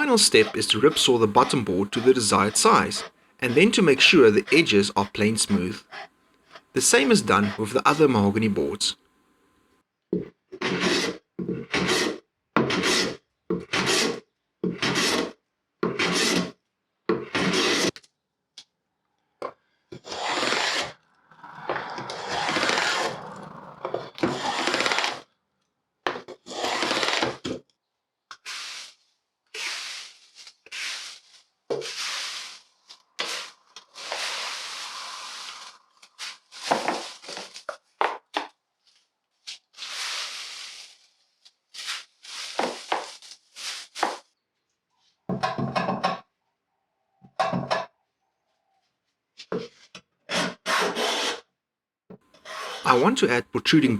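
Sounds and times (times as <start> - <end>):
wood rasping: 0.0 - 8.9, 20.0 - 25.1.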